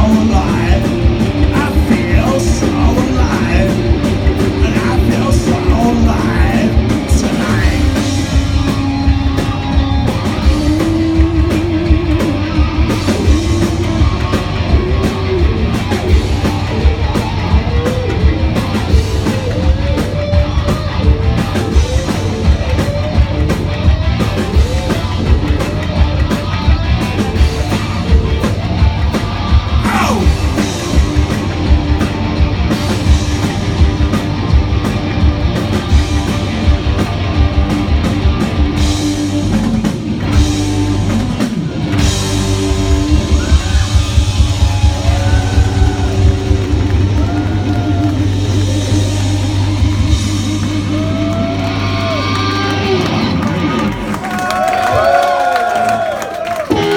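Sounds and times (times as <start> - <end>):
sung vocals: 0.0 - 9.0, 29.7 - 31.0
guitars: 0.0 - 55.2, 55.8 - 56.9
live rock band playing: 0.0 - 56.9
pounding drum beat: 0.0 - 56.9.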